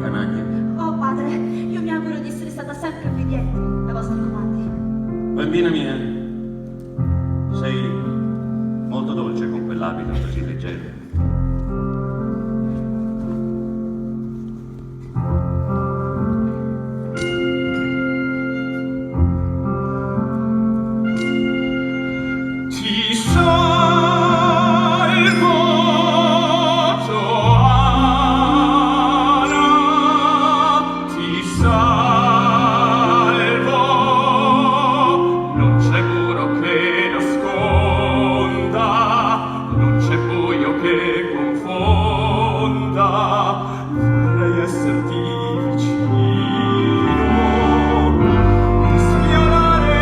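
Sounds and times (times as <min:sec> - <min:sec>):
instrumental accompaniment: 0:00.0 - 0:50.0
person singing operatically: 0:22.7 - 0:50.0.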